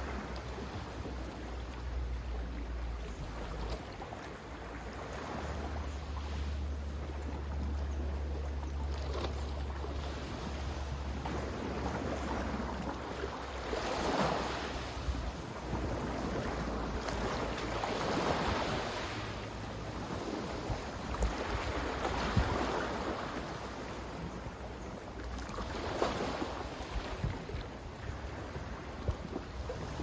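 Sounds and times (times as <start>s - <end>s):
wind rumble on microphone: 0.0s - 30.0s
sea waves washing: 9.6s - 23.9s.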